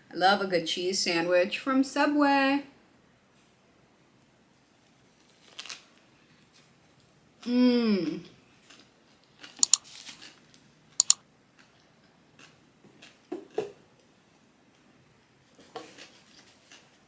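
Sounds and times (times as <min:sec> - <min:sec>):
crunchy chewing: 0:08.6 - 0:11.8.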